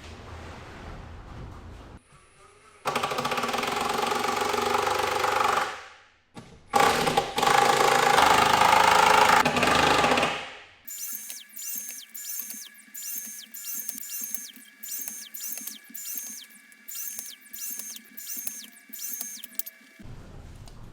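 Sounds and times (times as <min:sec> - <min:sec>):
power tool motor running: 0:10.9 - 0:20.0.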